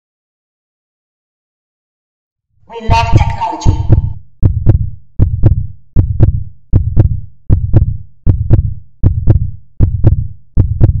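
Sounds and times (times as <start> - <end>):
heartbeat thumps: 2.9 - 11.0.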